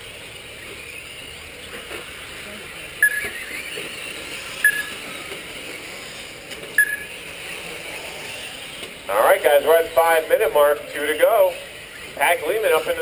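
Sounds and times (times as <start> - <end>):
rc trucks running: 0.0 - 13.0
short sharp high beeps: 3.0 - 3.4, 4.6 - 5.0, 6.8 - 7.1.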